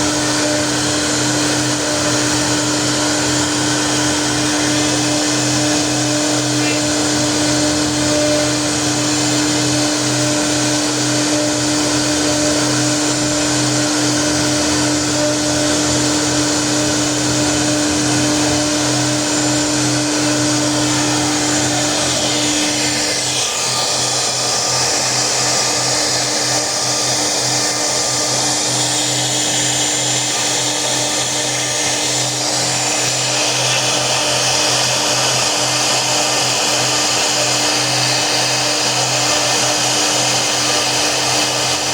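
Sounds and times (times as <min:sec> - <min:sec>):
cnc router humming: 0:00.0 - 0:41.9.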